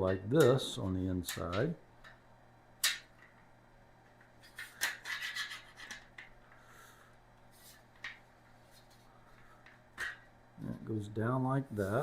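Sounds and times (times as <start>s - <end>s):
shelf parts clicking: 1.2s - 2.2s.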